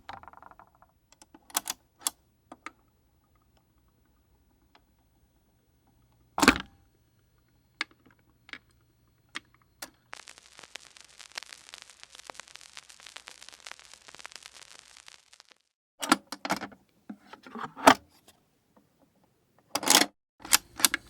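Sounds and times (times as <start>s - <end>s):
vinyl crackle and hiss: 3.5s - 15.8s
vinyl record pops: 9.4s - 15.8s
turntable click: 9.8s - 15.5s.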